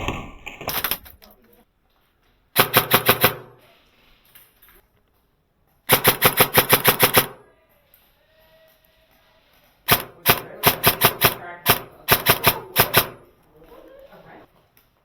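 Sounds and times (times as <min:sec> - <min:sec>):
airsoft gun bursts: 0:00.5 - 0:01.2, 0:02.6 - 0:03.8, 0:05.9 - 0:07.5, 0:09.8 - 0:13.4.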